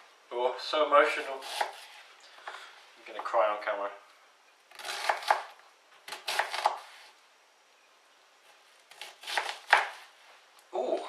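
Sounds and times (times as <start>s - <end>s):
knife slicing onion on board: 1.3s - 2.0s, 4.7s - 7.1s, 8.9s - 10.1s.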